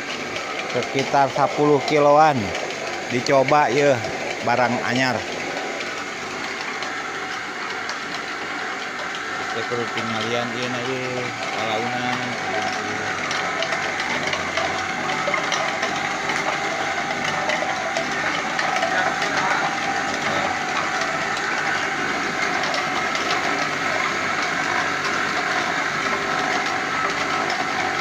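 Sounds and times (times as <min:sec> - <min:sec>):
machine hum: 0:00.0 - 0:28.0
ore tumbling in drum mill: 0:00.0 - 0:28.0.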